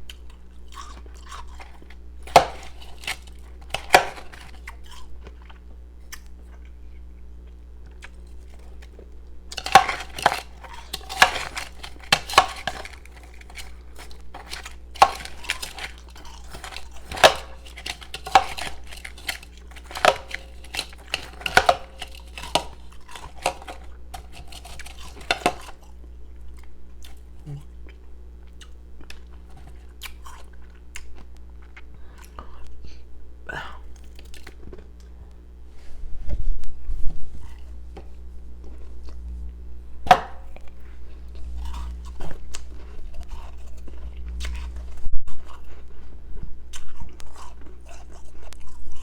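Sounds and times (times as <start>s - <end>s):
faint low hum: 0.0s - 49.0s
ice clinking and crunching: 0.1s - 6.6s, 8.0s - 26.0s, 40.1s - 49.0s.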